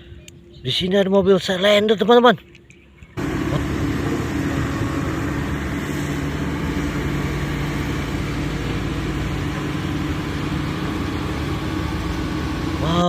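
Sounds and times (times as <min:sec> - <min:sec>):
diesel engine idling: 0:03.2 - 0:13.0.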